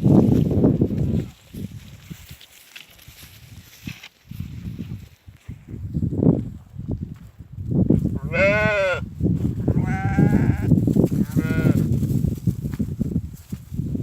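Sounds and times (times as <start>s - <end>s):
goats bleating: 8.2s - 9.0s, 9.8s - 11.9s.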